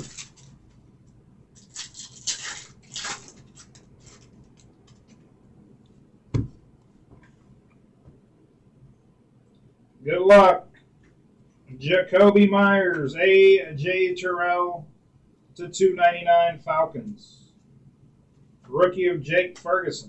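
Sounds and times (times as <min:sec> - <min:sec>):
cards rustling and sliding: 0:00.0 - 0:00.6.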